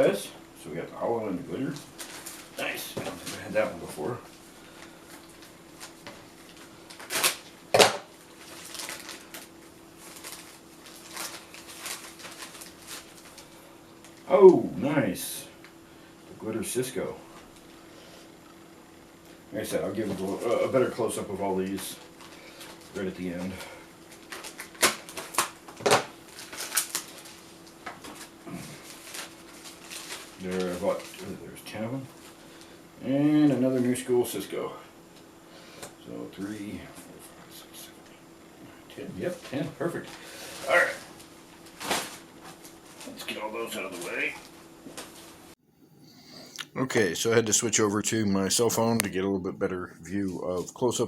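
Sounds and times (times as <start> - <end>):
faint steady hum: 0.0 - 51.0
sharp packaging crackles: 5.2 - 14.2, 24.1 - 31.2
packaging rustling: 8.3 - 14.2, 26.3 - 27.4, 28.9 - 30.4.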